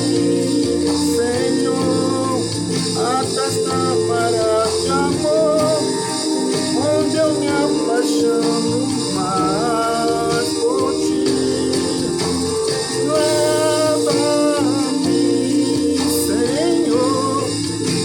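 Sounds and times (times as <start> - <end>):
worship music with singing: 0.0 - 18.0.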